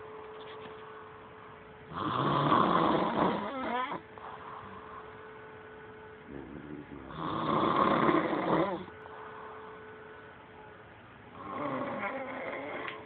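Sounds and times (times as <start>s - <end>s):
faint steady hum: 0.0s - 13.0s
person snoring: 1.9s - 5.0s, 6.3s - 8.9s, 11.4s - 13.0s.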